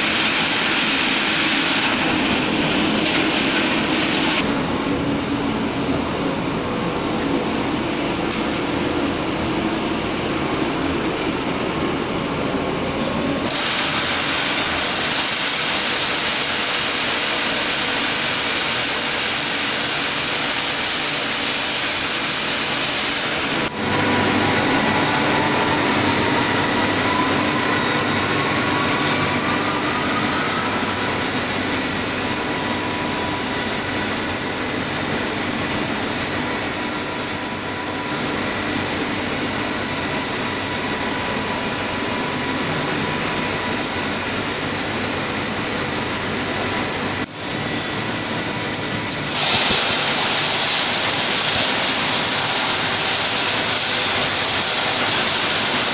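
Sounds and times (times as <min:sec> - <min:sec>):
machinery running with hum: 0:00.0 - 0:55.9
loud hiss: 0:13.5 - 0:23.7, 0:49.0 - 0:55.9
motor whine rising: 0:23.7 - 0:34.2.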